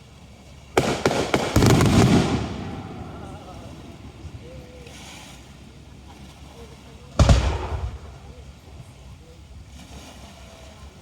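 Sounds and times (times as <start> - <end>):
firework crackling: 0.0 - 11.0
firework bangs: 0.8 - 6.2, 7.1 - 10.1.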